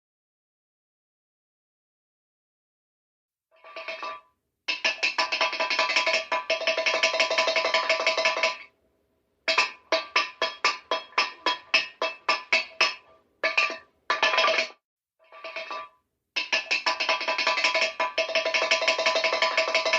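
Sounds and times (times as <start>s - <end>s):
metal cup clanging on bars: 3.7s - 8.7s, 9.5s - 19.9s.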